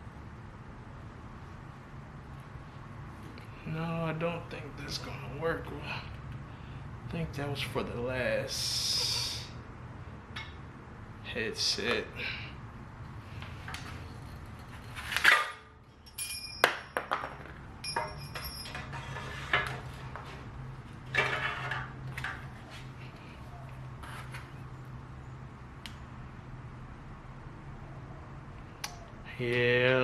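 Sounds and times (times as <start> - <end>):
small metal parts clinking: 15.9 - 19.3.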